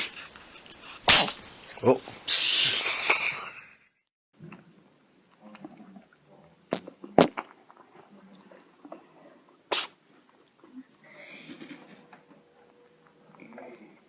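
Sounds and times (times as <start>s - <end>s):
cat sneezing: 1.1s - 1.4s, 9.7s - 10.0s.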